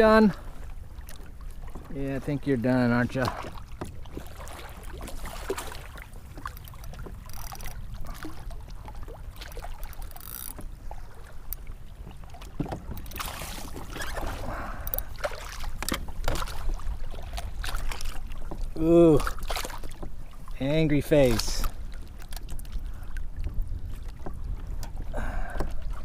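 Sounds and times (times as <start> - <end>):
water sloshing and splashing: 0.0 - 26.0
knocks and clicks on hull: 1.0 - 20.3, 21.2 - 26.0
wind rumble on microphone: 10.7 - 26.0.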